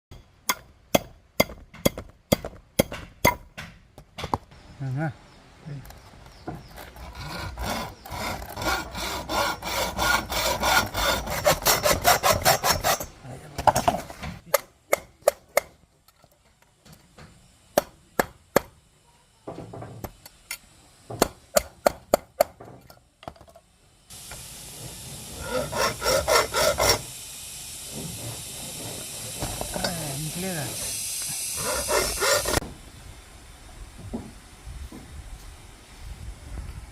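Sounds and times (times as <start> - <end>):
hand saw cutting wood: 6.5 - 13.2, 24.8 - 27.2, 27.8 - 32.6.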